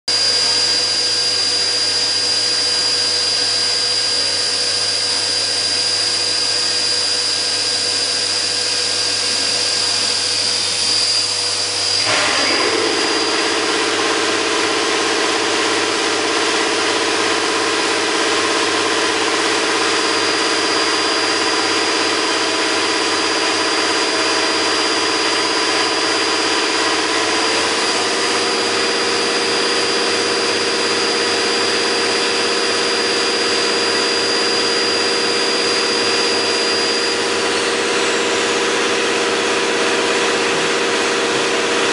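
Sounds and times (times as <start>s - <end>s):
machine running with high whine: 0.1s - 41.9s.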